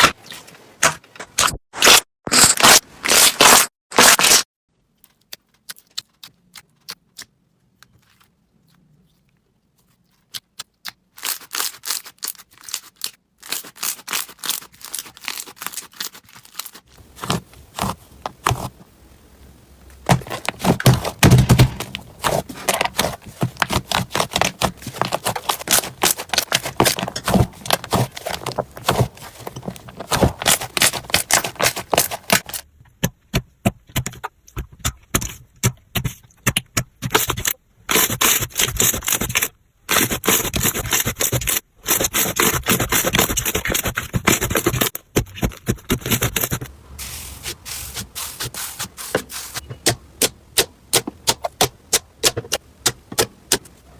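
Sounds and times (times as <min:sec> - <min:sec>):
dull thuds: 0:20.0 - 0:25.2.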